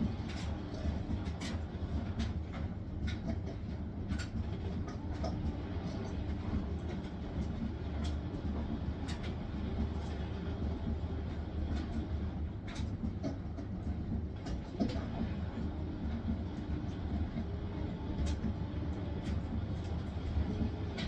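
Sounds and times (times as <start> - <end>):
washing machine drum rumbling: 0.0 - 21.0.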